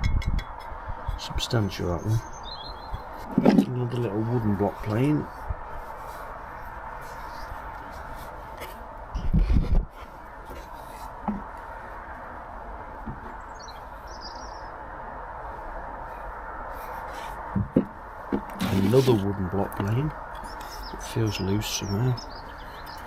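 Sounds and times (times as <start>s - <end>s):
bird chirping: 1.8s - 3.2s, 6.6s - 7.6s, 13.3s - 14.8s, 18.6s - 23.0s.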